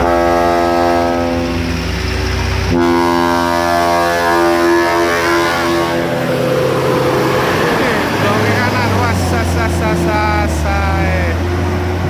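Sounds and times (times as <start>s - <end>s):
multi-tone bus air horn: 0.0s - 1.9s, 2.7s - 8.5s
bus engine running low: 0.0s - 12.0s.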